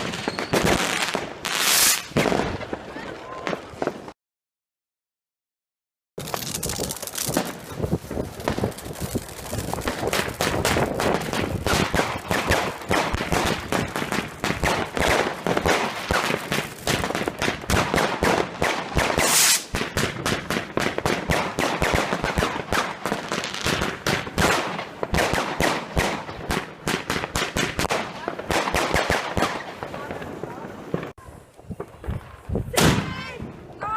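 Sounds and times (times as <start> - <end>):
fireworks bangs and cracks: 0.0 - 4.2, 6.2 - 33.8
firework hissing burst: 1.5 - 2.2, 19.1 - 19.8.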